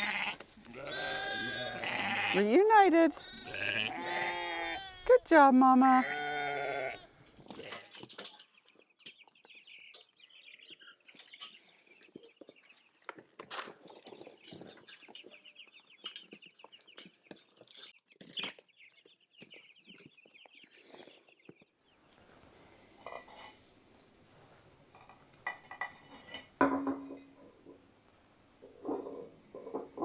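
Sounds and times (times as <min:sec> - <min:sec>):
faint steady hiss: 0:22.1 - 0:29.6.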